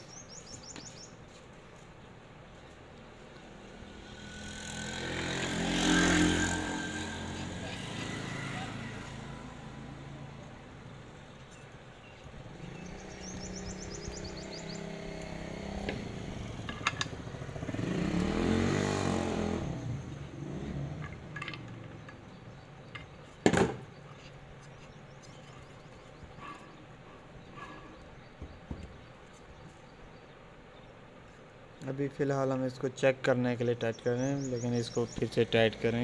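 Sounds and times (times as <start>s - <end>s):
vehicle passing by: 3.1s - 11.3s, 12.4s - 22.5s, 35.0s - 36.0s.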